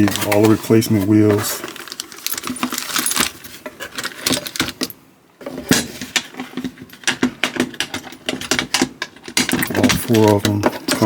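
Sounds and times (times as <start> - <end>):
small metal parts clinking and rattling: 1.3 - 5.0, 6.7 - 11.0.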